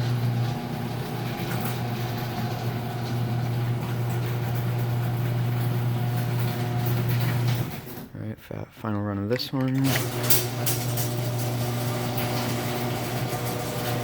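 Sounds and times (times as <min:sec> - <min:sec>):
garage door opener motor hum: 0:00.0 - 0:08.1, 0:09.8 - 0:14.0
metal rollers rattling: 0:00.1 - 0:08.1, 0:09.8 - 0:14.0
gears grinding: 0:09.6 - 0:14.0.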